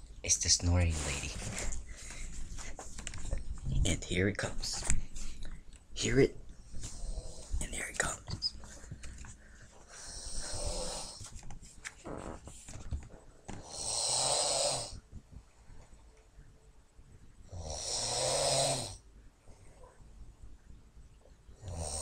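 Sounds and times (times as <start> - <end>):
quiet breathing: 1.0 - 3.6, 6.5 - 11.4, 18.9 - 20.3
woman snoring: 10.0 - 11.2, 13.6 - 15.0, 17.5 - 19.0, 21.6 - 22.0.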